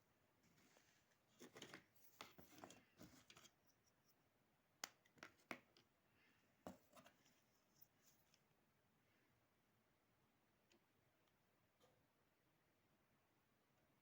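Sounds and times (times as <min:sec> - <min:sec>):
rustling and scraping of small parts: 0:00.4 - 0:04.2, 0:06.6 - 0:08.5.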